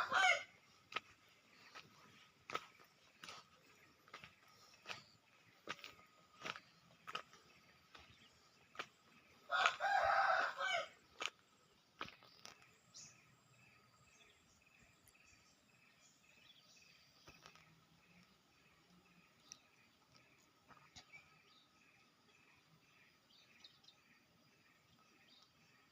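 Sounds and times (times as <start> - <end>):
rooster crowing: 0.0 - 0.5, 9.5 - 11.0.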